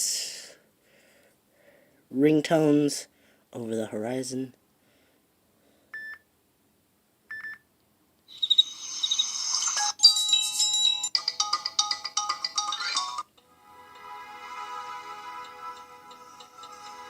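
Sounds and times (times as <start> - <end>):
phone ringtones playing: 9.7 - 13.3.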